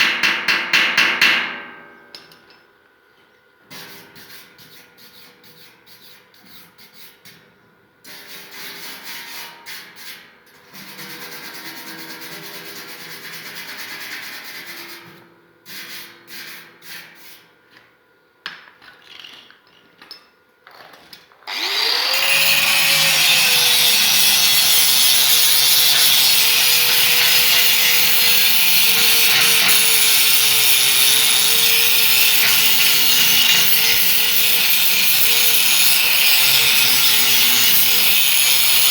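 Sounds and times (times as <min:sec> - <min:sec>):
power tool grinding whine: 0:21.5 - 0:38.9.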